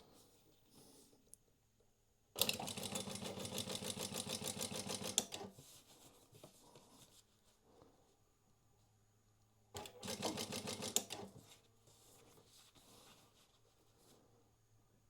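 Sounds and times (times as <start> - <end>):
sewing machine stitching: 2.4 - 5.5, 9.8 - 11.4.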